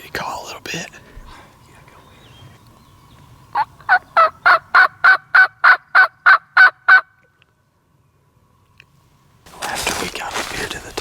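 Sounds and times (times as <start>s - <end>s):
turkey call hen yelps: 3.6s - 7.2s.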